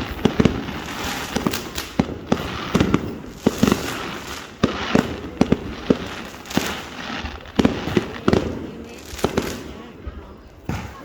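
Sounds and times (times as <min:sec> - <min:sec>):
fireworks bangs: 0:00.0 - 0:11.0
fireworks crackle: 0:00.0 - 0:11.0.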